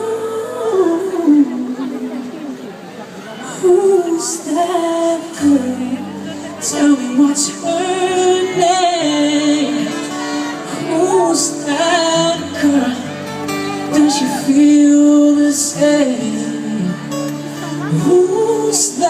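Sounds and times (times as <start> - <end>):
live pop band music: 0.0 - 19.0.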